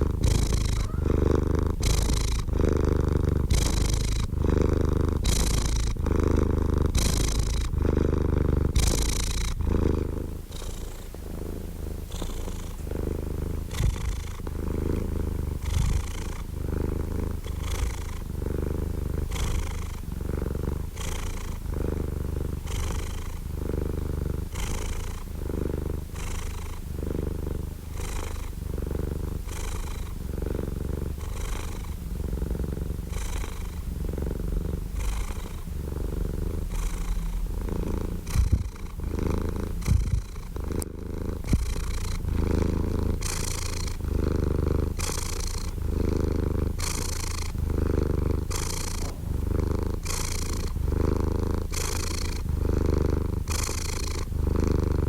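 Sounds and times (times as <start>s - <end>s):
cat purring: 0.0s - 55.0s.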